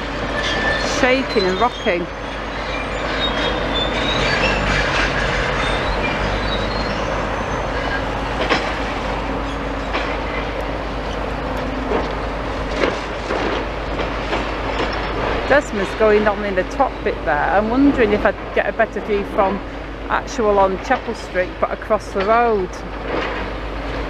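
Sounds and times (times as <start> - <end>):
metal squeals: 0.0 - 12.1
excavator grinding masonry: 0.0 - 24.0.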